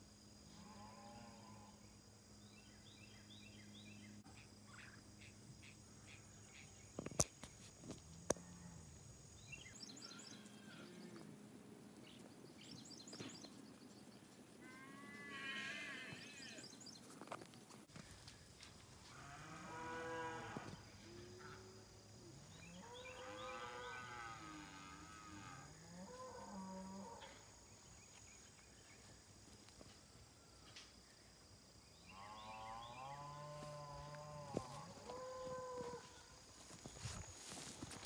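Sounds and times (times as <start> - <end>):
cattle mooing: 14.6 - 16.6, 22.7 - 27.3.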